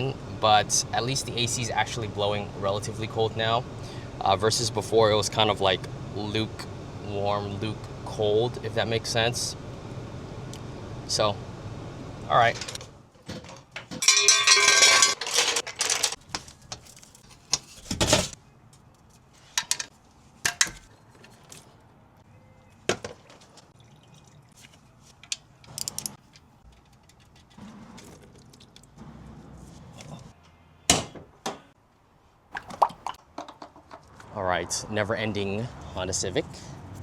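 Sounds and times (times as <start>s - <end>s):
small tools clicking and clinking: 13.7s - 17.8s, 25.2s - 28.8s.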